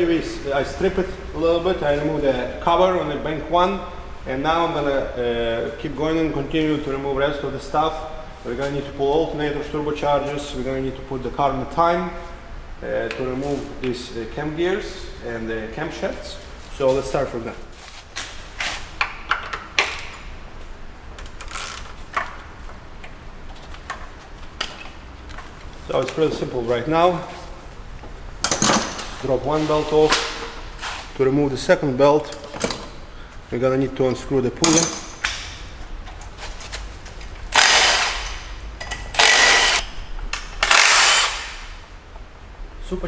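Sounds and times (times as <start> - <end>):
impact wrench hammering: 28.4 - 29.2, 34.6 - 35.6, 37.5 - 41.8
hand tools clicking and knocking: 28.4 - 29.3, 34.6 - 41.5.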